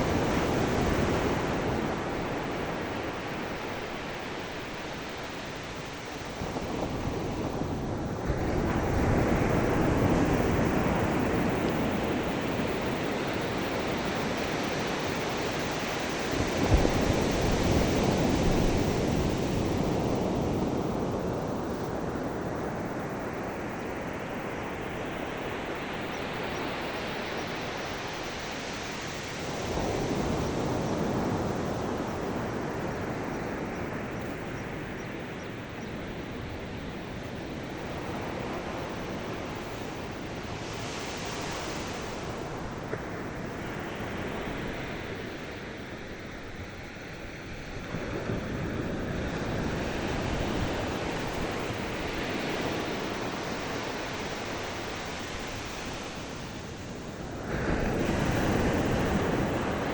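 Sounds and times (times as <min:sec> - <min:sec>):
ocean waves breaking on shore: 0:35.7 - 0:59.9.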